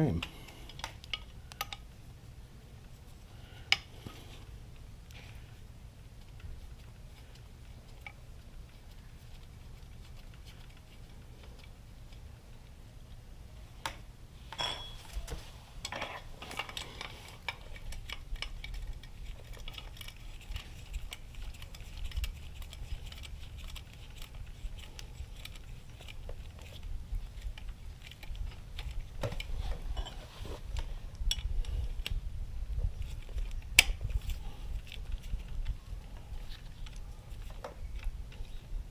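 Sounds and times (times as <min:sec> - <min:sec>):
metal tools clinking and tapping: 0:14.5 - 0:17.6.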